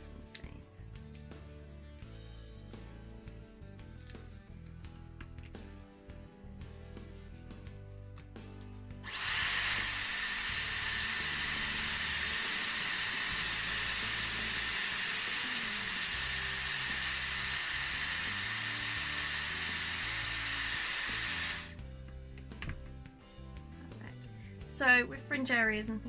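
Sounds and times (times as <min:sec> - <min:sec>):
hair styler blowing air: 0:09.0 - 0:21.8.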